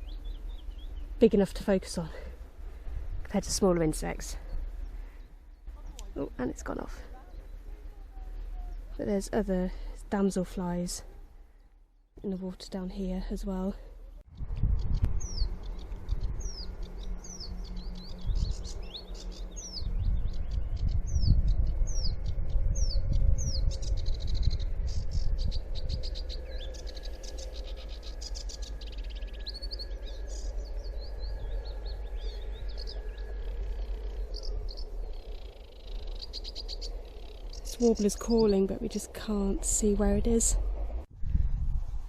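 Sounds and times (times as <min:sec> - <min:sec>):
warbler singing: 0:00.0 - 0:02.4, 0:03.4 - 0:11.0, 0:11.6 - 0:40.8
low rumble: 0:00.0 - 0:12.3, 0:13.2 - 0:42.0.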